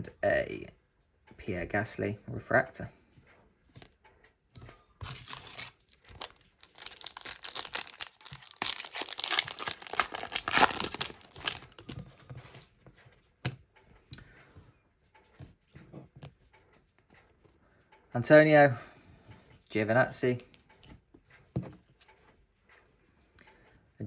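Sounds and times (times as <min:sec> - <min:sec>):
wrapper tearing and crinkling: 0:05.0 - 0:11.8.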